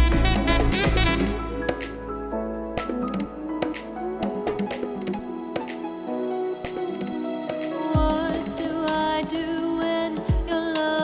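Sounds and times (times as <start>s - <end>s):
electronic music: 0.0s - 9.5s.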